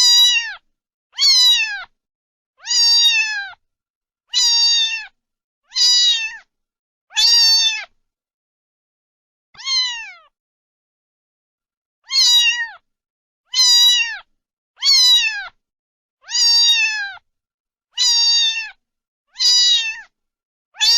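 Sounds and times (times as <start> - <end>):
cat meowing: 0.0 - 0.6, 1.2 - 1.9, 2.6 - 3.6, 4.3 - 6.5, 7.1 - 8.0, 9.6 - 10.3, 12.0 - 12.8, 13.5 - 15.6, 16.2 - 17.2, 18.0 - 18.8, 19.4 - 20.1.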